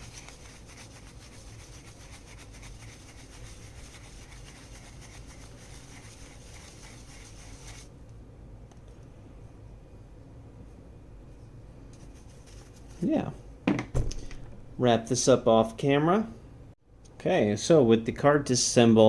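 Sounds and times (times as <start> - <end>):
rapid scrubbing strokes: 0.0 - 7.9.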